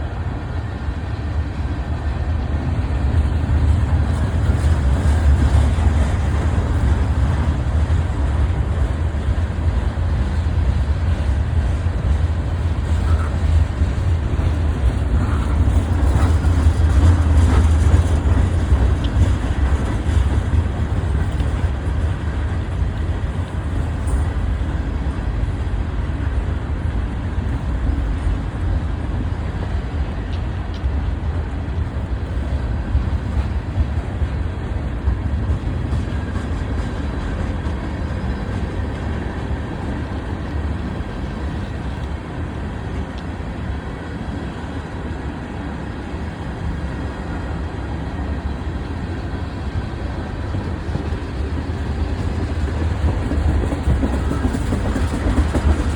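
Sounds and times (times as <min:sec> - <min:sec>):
freight train rumbling on rails: 0:00.0 - 0:55.9.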